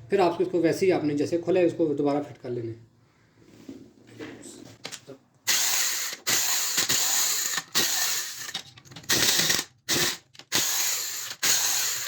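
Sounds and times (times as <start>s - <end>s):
hand-held power tool bursts: 5.4s - 12.0s.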